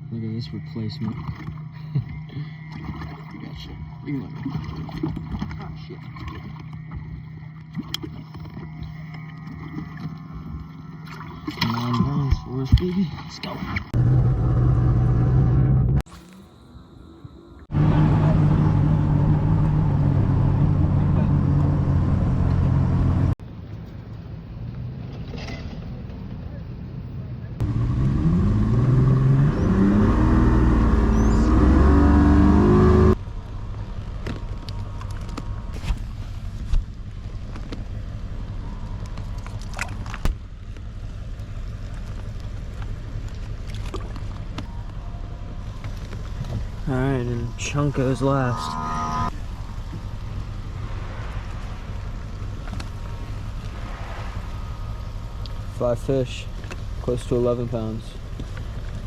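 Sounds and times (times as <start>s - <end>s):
outboard motor running: 0.6s - 13.3s, 29.1s - 59.0s
low rumble: 13.8s - 23.4s, 27.2s - 59.0s
wind and water rushing: 49.3s - 57.0s.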